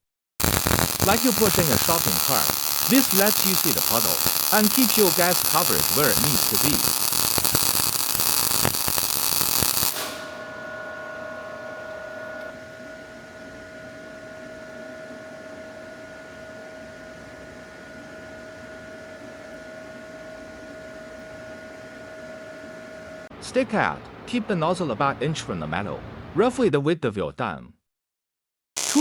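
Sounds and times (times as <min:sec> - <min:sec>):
welding arc crackling: 0:00.4 - 0:23.3, 0:28.8 - 0:29.0
electrical hum with high whine: 0:00.4 - 0:26.4.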